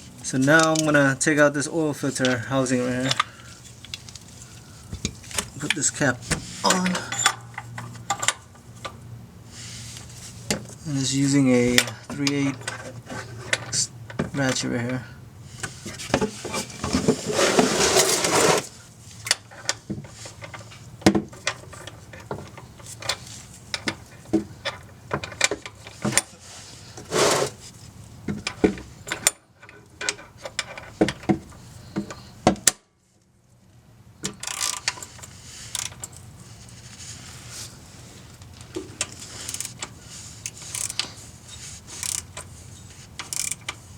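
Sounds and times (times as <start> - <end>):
ratchet clicking: 34.4 - 34.9, 40.4 - 41.1, 42.0 - 42.5, 43.2 - 43.8.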